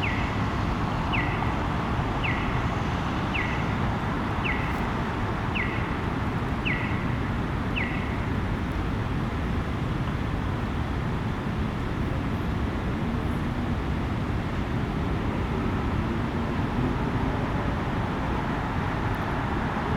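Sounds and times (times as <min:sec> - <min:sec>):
crosswalk signal chirping: 0:00.0 - 0:08.6
road traffic: 0:00.0 - 0:19.9.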